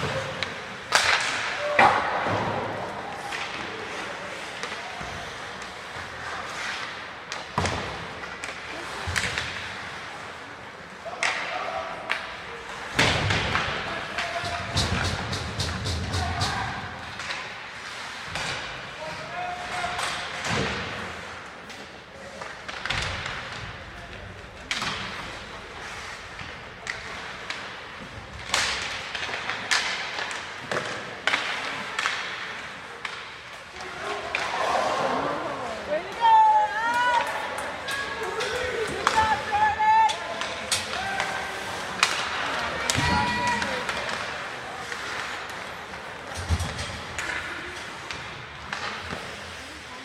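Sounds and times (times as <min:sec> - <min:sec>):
puck and sticks knocking boards: 0:00.0 - 0:09.9, 0:11.2 - 0:25.6, 0:26.4 - 0:35.2, 0:37.1 - 0:49.4
faint shouting voices: 0:33.8 - 0:45.0.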